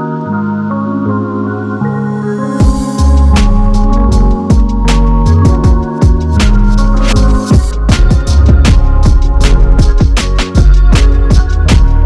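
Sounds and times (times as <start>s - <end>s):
electronic dance music: 2.6s - 12.0s.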